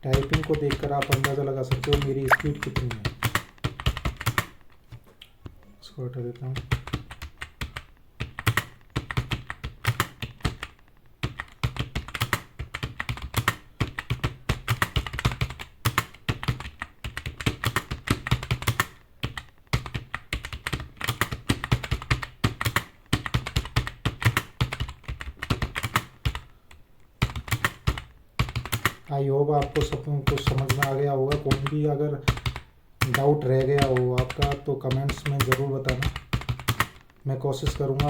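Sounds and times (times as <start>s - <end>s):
fast typing on keyboard: 0.0s - 4.7s, 6.6s - 26.5s, 27.2s - 38.0s.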